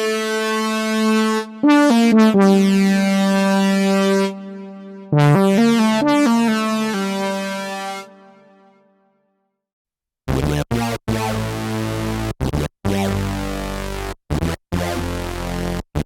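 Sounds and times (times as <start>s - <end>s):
choppy synth chords: 0.4s - 8.4s
synthesizer arpeggio: 0.4s - 8.4s.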